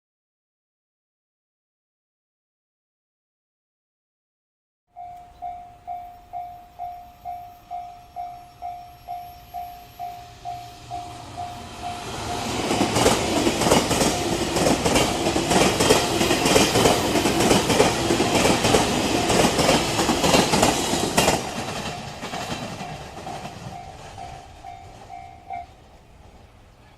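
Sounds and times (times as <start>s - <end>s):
crossing warning bell ringing: 4.9s - 26.2s
train wheels clattering: 6.9s - 26.9s.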